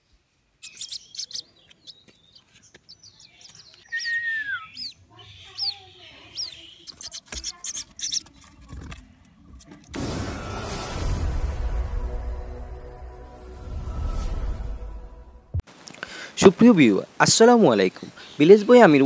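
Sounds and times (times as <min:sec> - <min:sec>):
chicks peeping: 0:00.6 - 0:08.6
falling whistle: 0:03.9 - 0:04.8.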